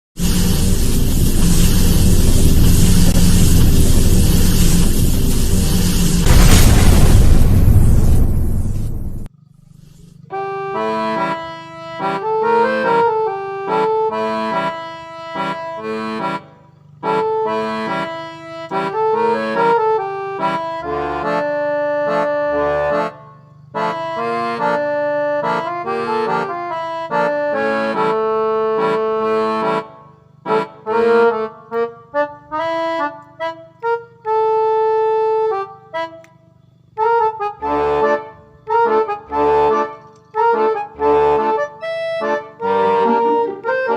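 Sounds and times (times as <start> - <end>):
reedy instrumental melody: 10.3 - 36.3, 36.9 - 43.9.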